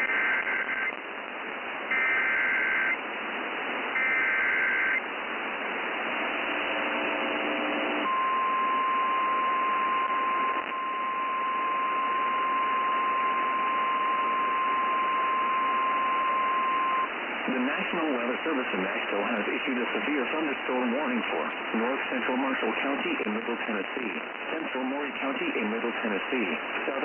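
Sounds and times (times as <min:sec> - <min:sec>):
warbling data tones: 0:00.0 - 0:00.9, 0:01.9 - 0:03.0, 0:04.0 - 0:05.0
radio static hiss: 0:00.0 - 0:27.0.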